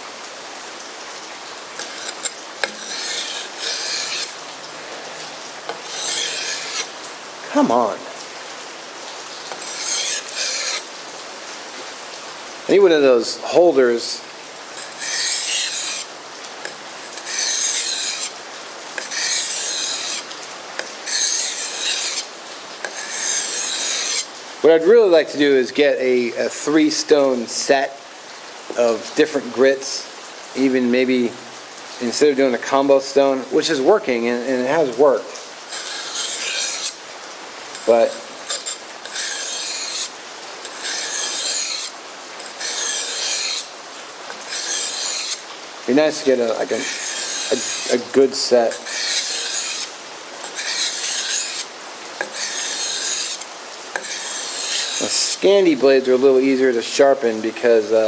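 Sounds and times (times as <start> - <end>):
knife scraping on wet whetstone: 1.8 - 4.4, 5.4 - 6.9, 9.4 - 10.9, 14.8 - 24.3, 33.6 - 37.0, 37.7 - 43.7, 44.3 - 56.1.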